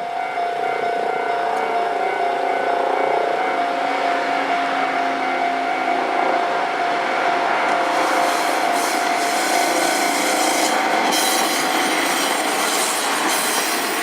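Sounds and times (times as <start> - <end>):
diesel railcar engine: 0.0 - 14.0
level crossing alarm ringing: 0.0 - 14.0
rail noise: 0.0 - 14.0.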